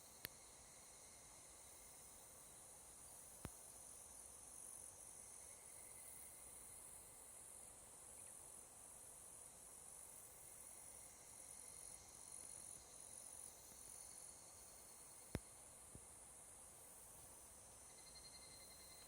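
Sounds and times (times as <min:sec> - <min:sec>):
cicadas calling: 0:17.7 - 0:19.0.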